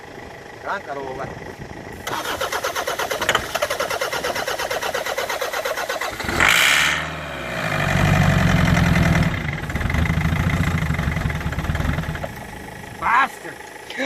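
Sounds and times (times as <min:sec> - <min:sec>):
diesel engine running unevenly: 0:00.0 - 0:14.0
diesel engine cranking on starter: 0:01.8 - 0:14.0.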